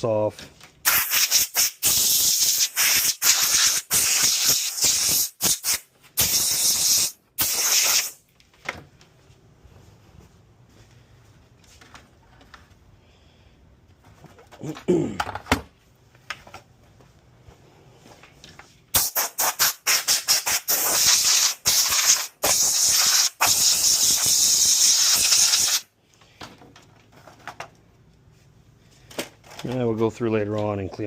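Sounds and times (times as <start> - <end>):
compressed air hissing: 0.8 - 8.2, 18.9 - 25.9.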